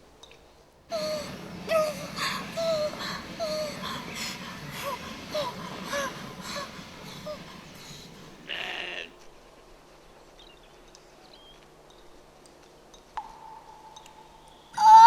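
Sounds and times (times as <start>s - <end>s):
breathy burst: 0.9s - 9.1s
short gasping vocal sounds: 0.9s - 9.1s.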